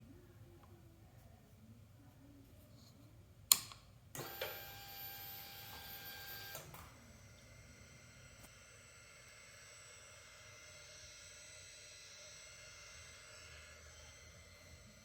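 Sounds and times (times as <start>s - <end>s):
small click: 3.5s - 4.4s.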